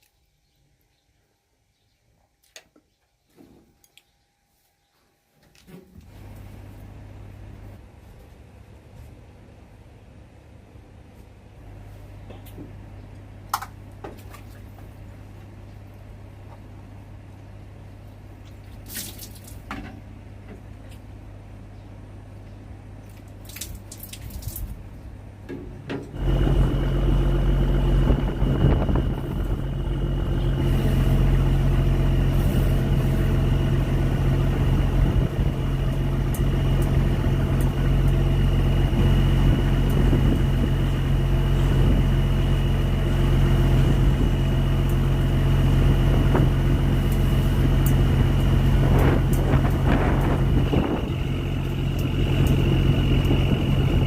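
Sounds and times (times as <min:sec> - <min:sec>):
low hum: 0:03.6 - 0:54.0
boat engine running: 0:26.1 - 0:54.0
thin high whine: 0:26.2 - 0:44.8.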